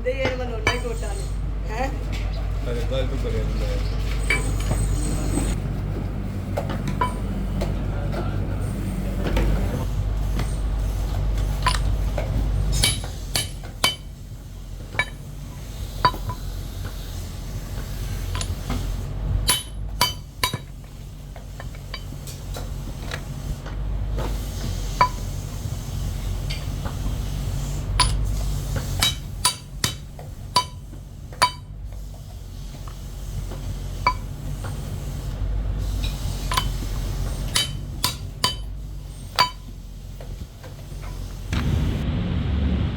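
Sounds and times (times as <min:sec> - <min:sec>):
workshop machine hum: 0:00.0 - 0:42.9
metallic clinks of steel parts: 0:11.5 - 0:12.0, 0:12.7 - 0:14.1, 0:15.0 - 0:15.2, 0:18.3 - 0:18.7, 0:21.6 - 0:22.2, 0:28.0 - 0:28.4, 0:36.0 - 0:38.7.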